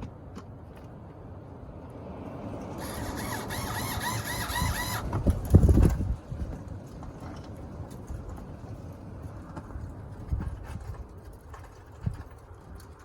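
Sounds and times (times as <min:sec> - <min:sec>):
electric screwdriver motor whining: 0:02.8 - 0:05.2.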